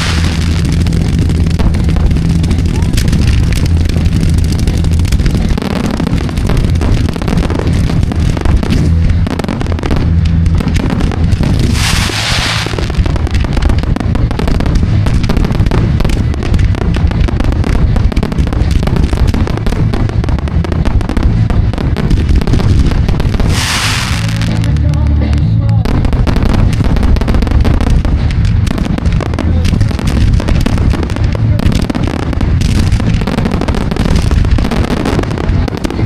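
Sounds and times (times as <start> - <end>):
loud hissing burst: 0.0 - 24.7
fireworks bangs and crackles: 0.0 - 36.0
low rumble: 0.0 - 36.0.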